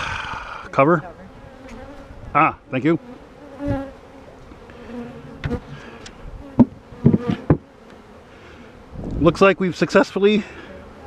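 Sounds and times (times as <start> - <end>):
honeybees buzzing: 0.0 - 11.0
sharp knocks: 6.6 - 7.6.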